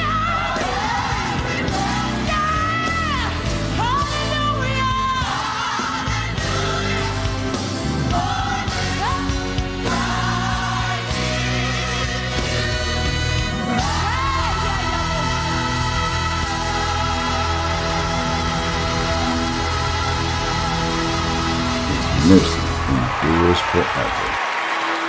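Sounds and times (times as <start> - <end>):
person singing gospel: 0.0 - 24.3
band accompaniment: 16.3 - 24.4.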